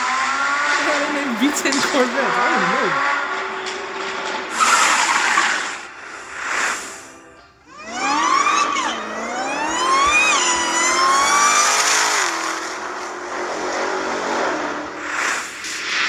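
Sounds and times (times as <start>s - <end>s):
car engine accelerating hard: 6.7s - 15.0s.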